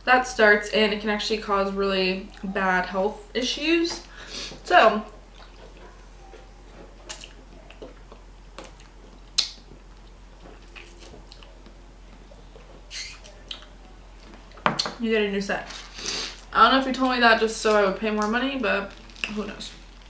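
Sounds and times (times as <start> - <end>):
person chewing food: 5.2 - 14.6
wet mouth clicks and smacks: 9.4 - 9.6.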